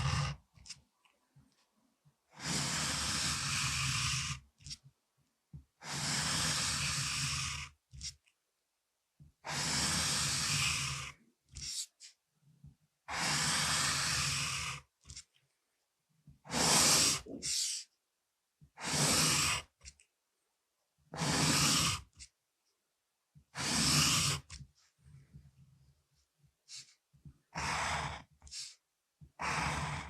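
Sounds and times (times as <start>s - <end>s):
pencil scraping across paper: 0.0s - 0.8s.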